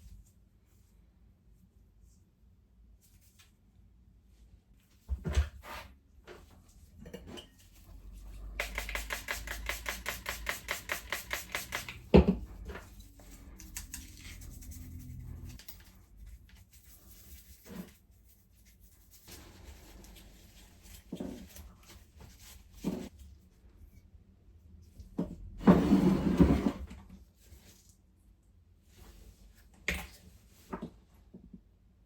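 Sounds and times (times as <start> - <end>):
rapid scraping strokes: 8.5 - 12.1, 12.8 - 15.6.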